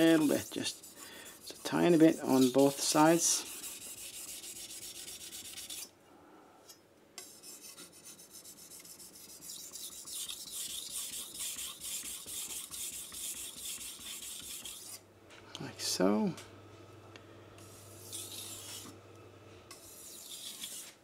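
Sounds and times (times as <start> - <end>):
knife scraping on whetstone: 0.0 - 5.9, 7.2 - 15.0, 17.6 - 19.0, 19.7 - 21.0.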